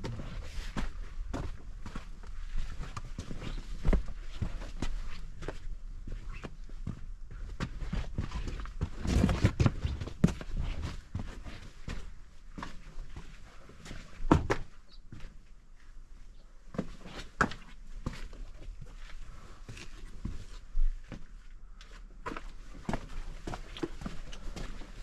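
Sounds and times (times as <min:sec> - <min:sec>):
footsteps and scuffs: 0:00.0 - 0:15.4.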